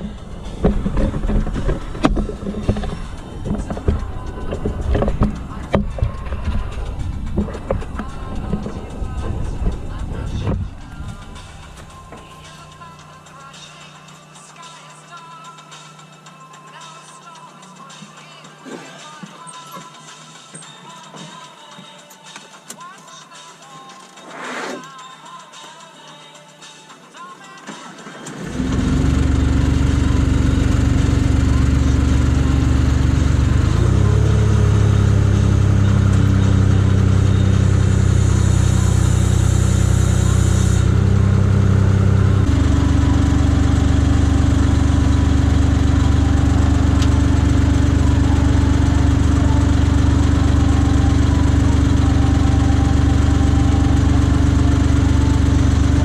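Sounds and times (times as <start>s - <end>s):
engine starting and running: 0.0s - 14.2s, 28.0s - 56.0s.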